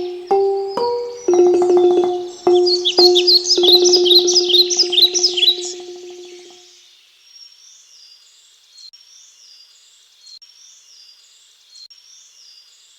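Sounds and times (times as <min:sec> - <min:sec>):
music outro: 0:00.0 - 0:06.5
high bird-like chirps: 0:00.0 - 0:06.6.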